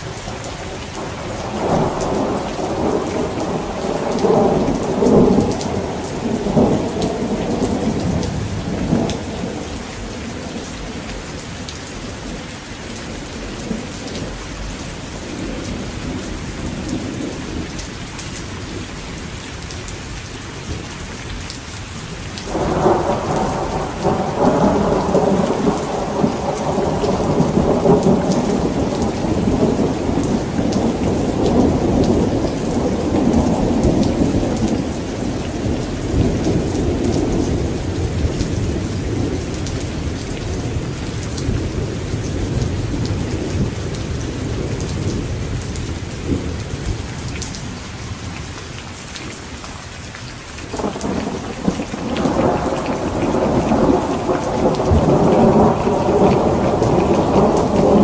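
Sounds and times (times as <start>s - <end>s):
steady rain: 0.0s - 58.0s
thunder rolling: 50.7s - 58.0s.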